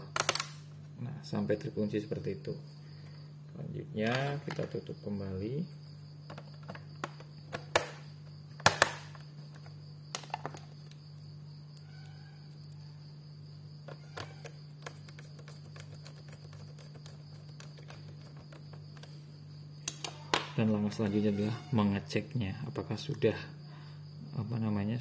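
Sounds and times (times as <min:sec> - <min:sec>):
steady low hum: 0:00.0 - 0:25.0
plastic cover clicking into place: 0:00.1 - 0:00.6, 0:08.6 - 0:09.2, 0:10.1 - 0:10.7.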